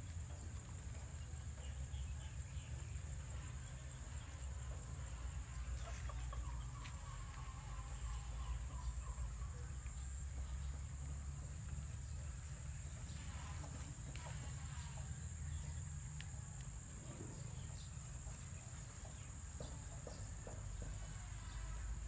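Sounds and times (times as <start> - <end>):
insect buzz: 1.8 - 22.0
chickens clucking: 2.7 - 15.6.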